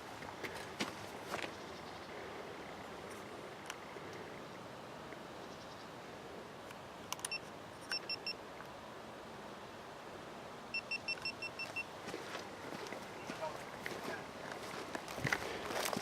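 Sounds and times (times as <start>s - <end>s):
faint outdoor background: 0.0s - 16.0s
sharp clicks: 7.1s - 8.0s.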